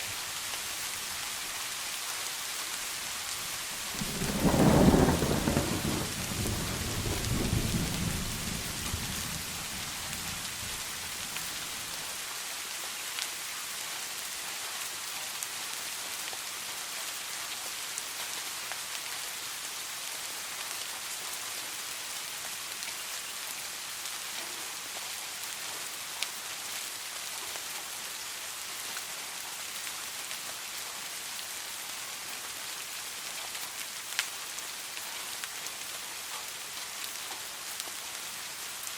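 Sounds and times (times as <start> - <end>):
heavy rain falling: 0.0 - 15.5
thunder rumble: 3.5 - 12.0.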